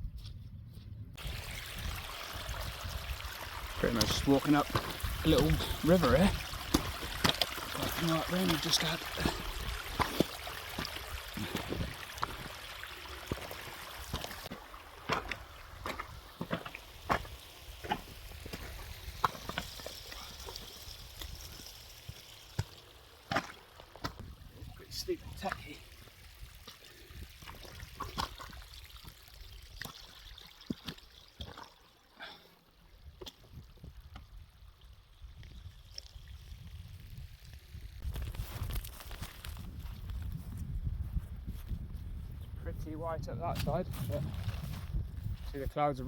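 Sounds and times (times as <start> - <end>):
wind rumbling on microphone: 0.0 - 7.2, 9.2 - 12.6, 33.4 - 45.8
stream running and trickling: 1.2 - 46.0
footsteps on wet ground: 3.7 - 20.6, 38.0 - 42.0, 43.5 - 45.7.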